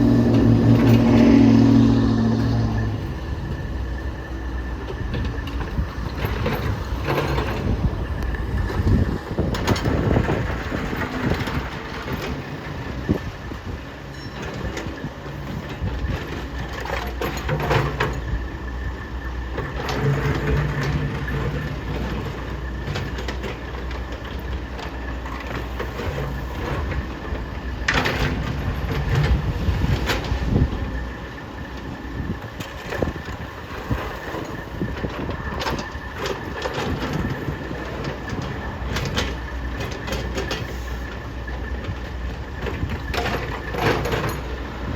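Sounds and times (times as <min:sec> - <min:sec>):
diesel engines working: 0:00.0 - 0:44.9.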